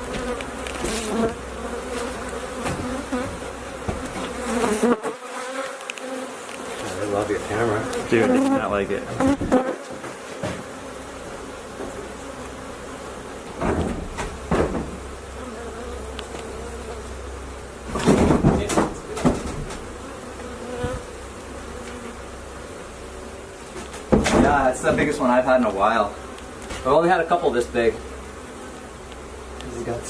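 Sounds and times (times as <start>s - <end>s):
bees buzzing: 0.0s - 30.0s
knocks and handling bumps: 17.9s - 19.8s.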